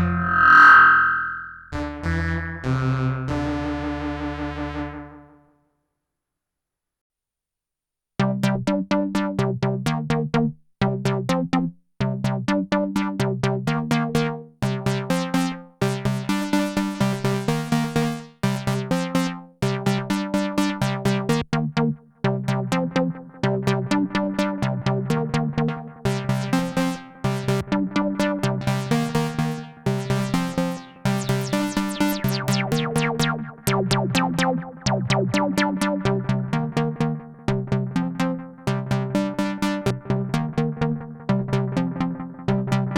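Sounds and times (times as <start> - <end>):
synthesizer plucky notes with delay: 0.0 - 5.3, 16.2 - 42.9.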